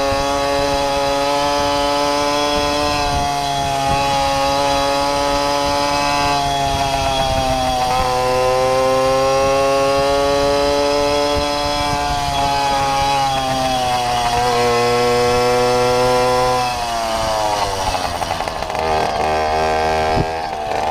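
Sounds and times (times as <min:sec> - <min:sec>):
moped engine running: 0:00.0 - 0:20.9.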